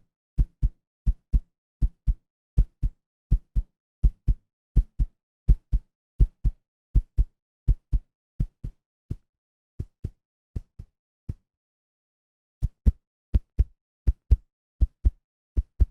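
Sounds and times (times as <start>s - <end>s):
heartbeat thumps: 12.6s - 15.9s.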